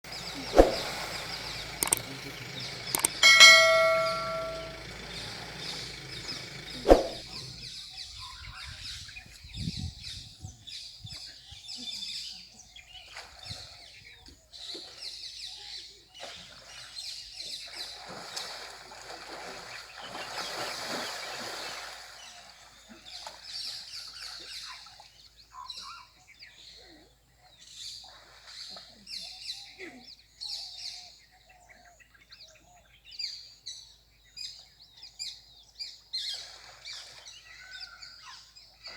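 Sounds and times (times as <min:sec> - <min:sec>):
birds chirping and calling: 0:00.1 - 0:07.8
sharp click: 0:00.4 - 0:01.0, 0:01.8 - 0:04.8, 0:06.8 - 0:07.2.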